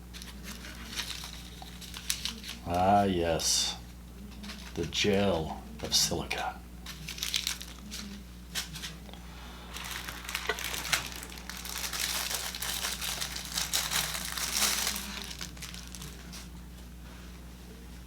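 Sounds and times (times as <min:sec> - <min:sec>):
packaging wrap crinkling: 0:00.1 - 0:03.0, 0:06.8 - 0:09.0, 0:09.6 - 0:16.6.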